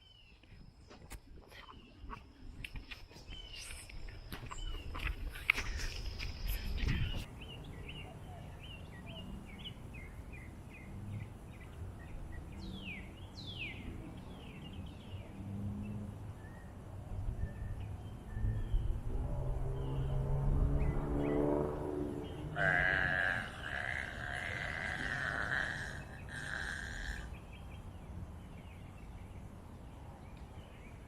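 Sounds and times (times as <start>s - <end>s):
birds chirping: 0.0s - 31.0s
long low burp: 22.5s - 27.3s.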